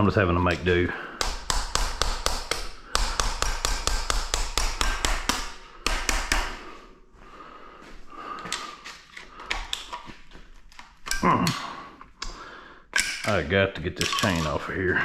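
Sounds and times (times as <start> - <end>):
impact wrench hammering: 1.1 - 6.6.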